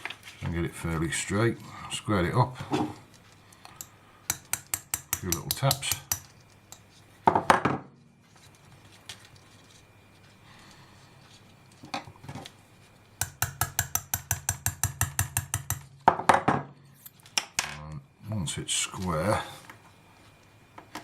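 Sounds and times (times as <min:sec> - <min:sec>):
small hammer tapping metal: 0:03.7 - 0:06.8, 0:13.2 - 0:16.2.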